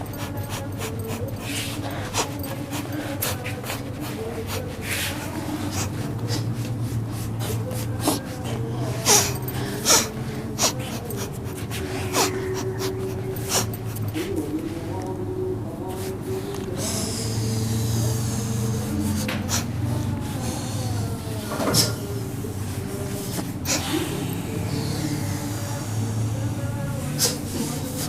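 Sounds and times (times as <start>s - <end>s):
person breathing heavily: 0.0s - 14.5s, 16.3s - 21.4s
steady low hum: 0.0s - 28.0s.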